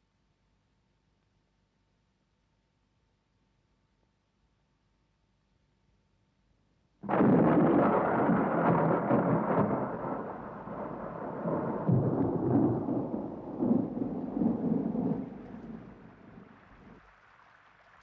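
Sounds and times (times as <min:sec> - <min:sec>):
thunder rolling: 0:07.0 - 0:17.0
thunderclap: 0:07.0 - 0:17.0
rain: 0:07.0 - 0:18.0.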